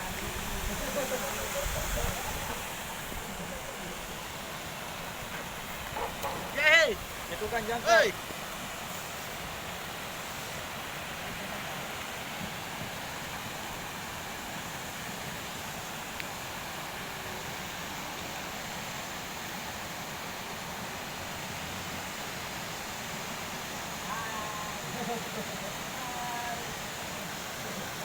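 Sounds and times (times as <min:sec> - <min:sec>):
waterfall rushing: 0:00.0 - 0:28.0.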